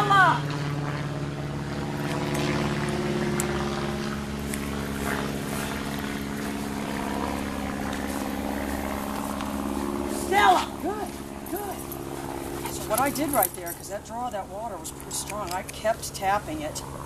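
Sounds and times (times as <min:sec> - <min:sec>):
steady motor drone: 0:00.0 - 0:17.0.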